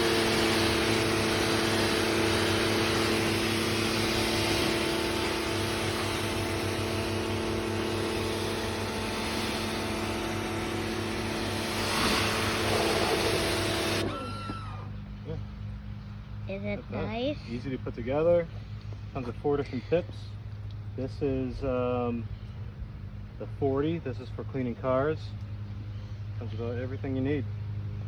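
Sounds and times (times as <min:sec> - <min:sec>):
water jet hissing: 0:00.0 - 0:14.4
pressure washer motor hum: 0:00.0 - 0:14.8.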